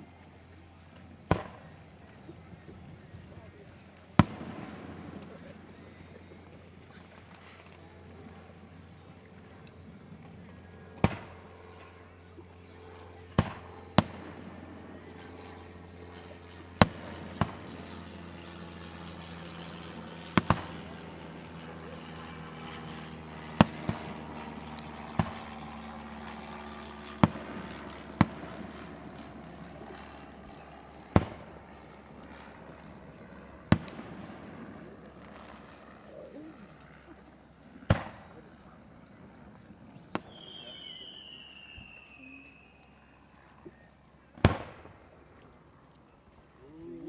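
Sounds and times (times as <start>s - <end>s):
low steady hum: 0.0s - 47.0s
fireworks booming: 4.2s - 5.4s, 44.4s - 44.9s.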